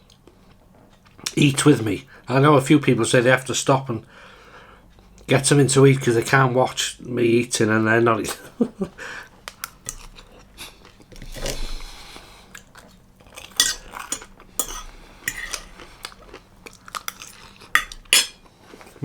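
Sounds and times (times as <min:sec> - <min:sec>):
person chewing: 0:09.2 - 0:19.0
cutlery clinking on a plate: 0:13.4 - 0:15.8, 0:17.0 - 0:18.4.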